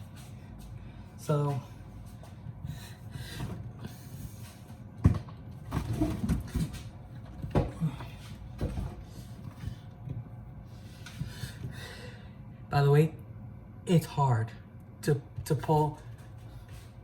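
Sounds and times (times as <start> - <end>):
refrigerator knocking and thumping: 5.0 - 10.4.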